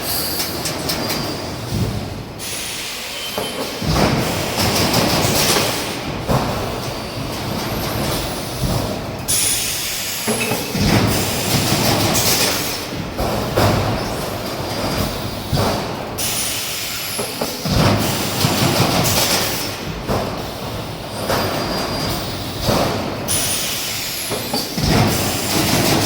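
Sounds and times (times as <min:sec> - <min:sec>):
machine mechanical clatter: 0:00.2 - 0:02.1, 0:03.3 - 0:26.0.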